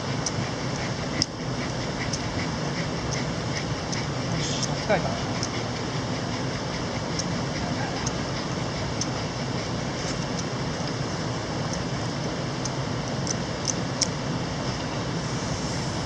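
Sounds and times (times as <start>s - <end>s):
small sharp ticks: 0.2s - 7.4s, 12.6s - 14.2s.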